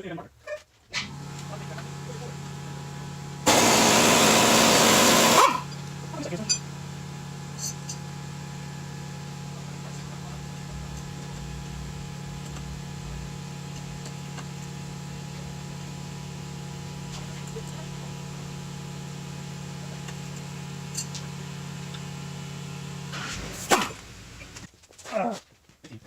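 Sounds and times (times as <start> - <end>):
low mechanical hum: 0.8 - 24.7.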